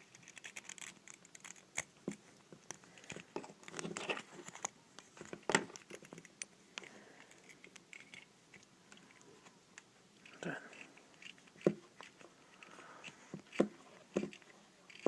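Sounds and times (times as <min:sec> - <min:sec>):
small metal clicks and scrapes: 0:00.0 - 0:01.9, 0:05.7 - 0:09.3, 0:10.2 - 0:15.0.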